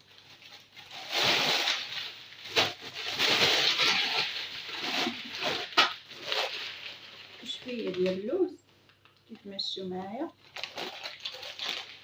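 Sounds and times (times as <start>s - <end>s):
bag rustling and crackling: 0.0s - 8.2s.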